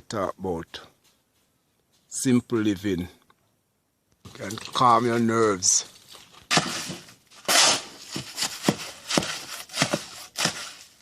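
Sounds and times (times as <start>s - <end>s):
shovel scraping wet mortar: 6.1s - 11.0s.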